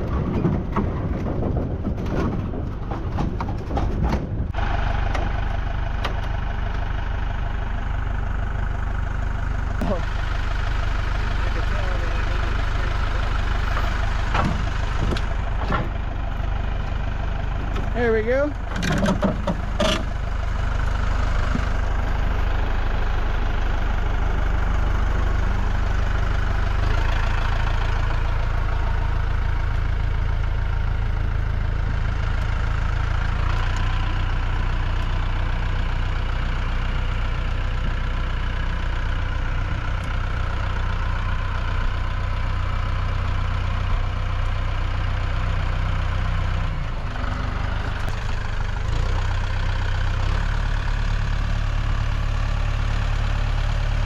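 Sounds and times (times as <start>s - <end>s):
vehicle engine running: 0.0s - 54.0s.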